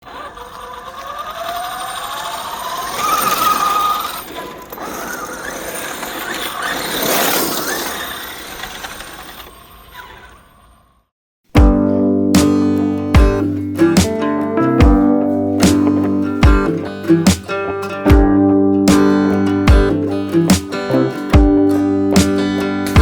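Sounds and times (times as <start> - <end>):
rough mechanical running noise: 0.0 - 11.0
toy car motor whining: 0.0 - 11.1.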